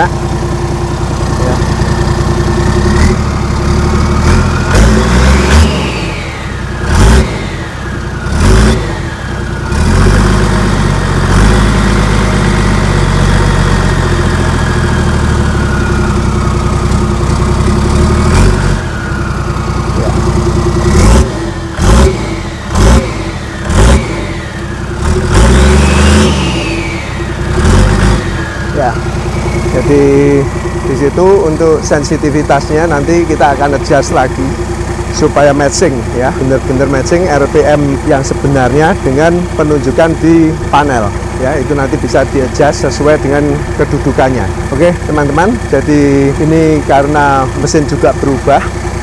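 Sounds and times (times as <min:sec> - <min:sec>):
car engine revving: 0:00.0 - 0:49.0.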